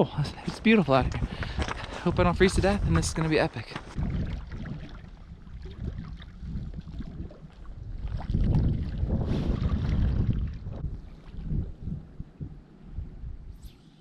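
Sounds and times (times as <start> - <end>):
wind buffeting microphone: 0.0 - 13.7.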